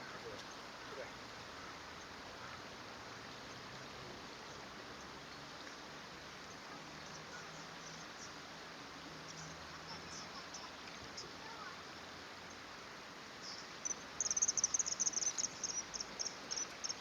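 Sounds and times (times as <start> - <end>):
outdoor background hiss: 0.0 - 17.0
faint high-pitched ticks: 13.5 - 17.0.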